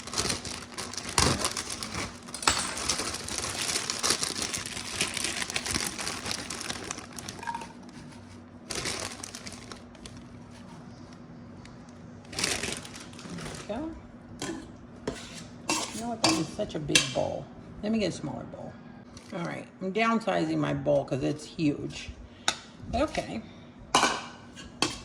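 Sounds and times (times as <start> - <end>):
crinkling and rustling: 0.0 - 11.2, 12.3 - 13.8.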